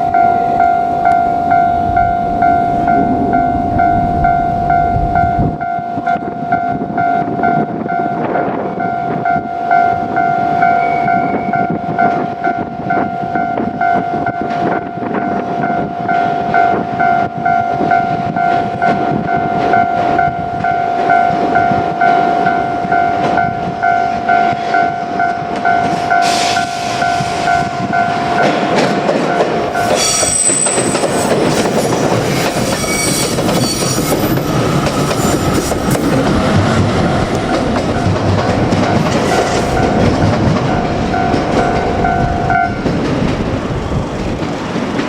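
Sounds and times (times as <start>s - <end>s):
level crossing bell ringing: 0.0s - 8.2s, 39.4s - 43.2s
electric train rumbling: 0.0s - 45.0s
train wheel clatter: 1.0s - 45.0s.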